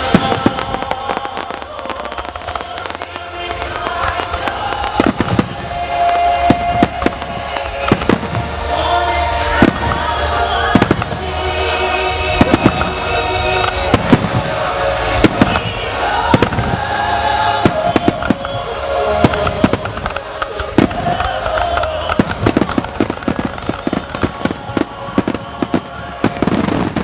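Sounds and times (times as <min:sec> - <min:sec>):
firework bangs and cracks: 0:00.0 - 0:27.0
music: 0:00.0 - 0:27.0.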